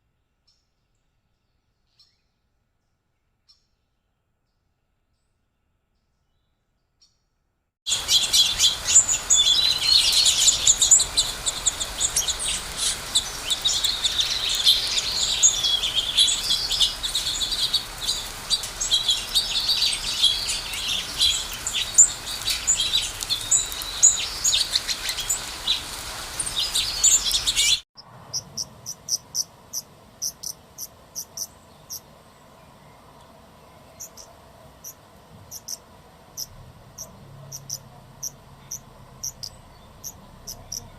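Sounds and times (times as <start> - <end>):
chorus of birds chirping: 7.9 - 35.8, 36.4 - 40.9.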